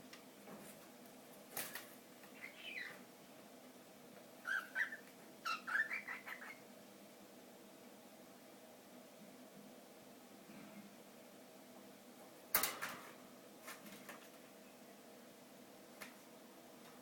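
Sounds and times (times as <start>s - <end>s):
small pet chirping and squeaking: 2.4s - 3.0s, 4.4s - 6.6s.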